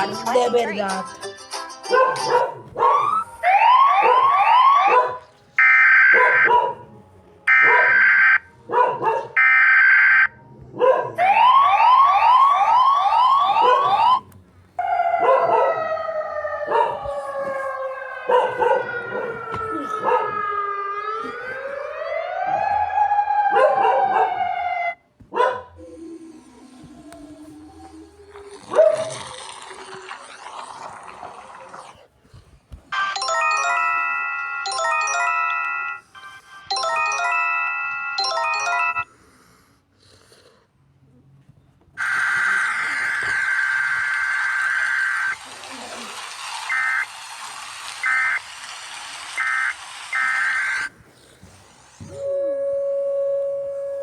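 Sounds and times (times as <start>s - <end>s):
electronic siren tone: 14.9s - 23.7s, 42.0s - 45.4s, 46.6s - 47.2s, 48.0s - 48.5s, 49.3s - 50.9s, 52.0s - 54.0s.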